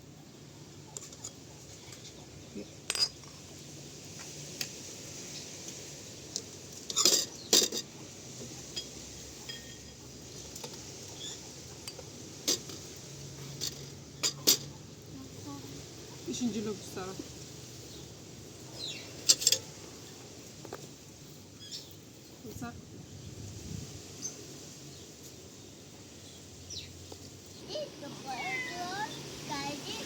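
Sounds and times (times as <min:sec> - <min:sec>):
dishes and cutlery clinking: 0:02.8 - 0:03.4, 0:06.9 - 0:07.9, 0:08.7 - 0:10.8, 0:11.8 - 0:14.8, 0:19.2 - 0:19.7.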